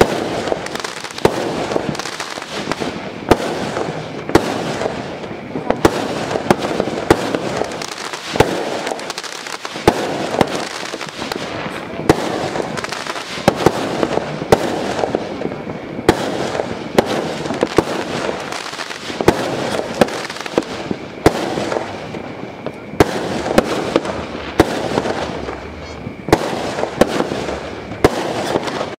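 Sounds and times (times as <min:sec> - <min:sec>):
crackle of small firework bursts: 0:00.0 - 0:28.9
fireworks bangs: 0:00.0 - 0:28.9.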